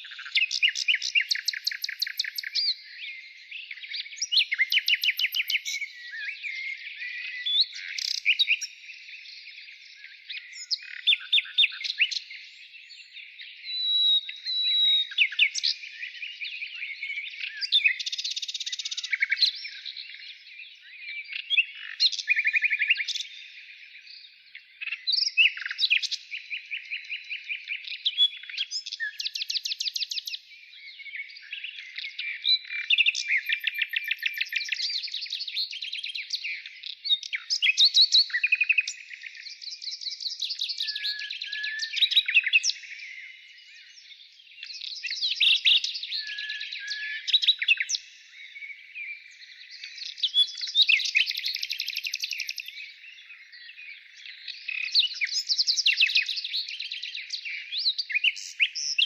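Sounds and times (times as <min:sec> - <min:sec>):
songbirds trilling: 0:00.0 - 0:59.0.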